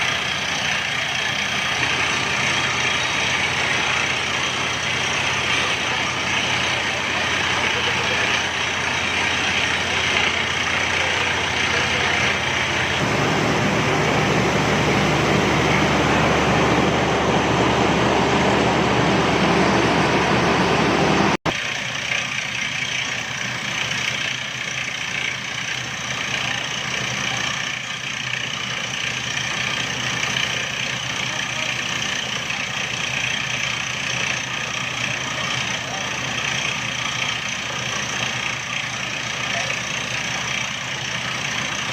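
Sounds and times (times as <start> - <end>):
drilling rig engine running: 0.0 - 41.9.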